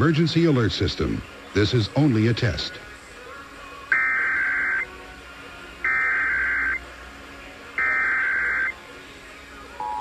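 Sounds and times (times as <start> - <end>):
digital data tone bursts: 3.9 - 4.9, 5.9 - 6.8, 7.8 - 8.8.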